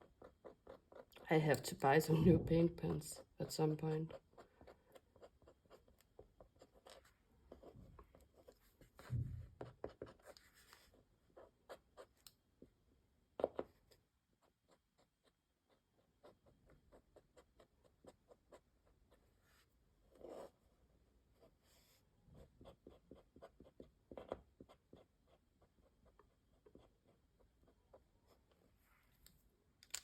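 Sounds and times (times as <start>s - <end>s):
soft knock: 9.0s - 9.7s.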